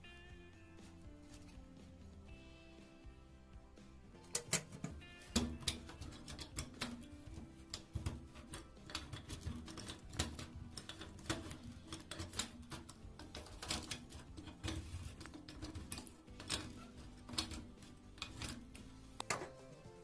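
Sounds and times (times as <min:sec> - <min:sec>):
background music: 0:00.0 - 0:20.0
sharp clicks and taps: 0:04.2 - 0:19.6.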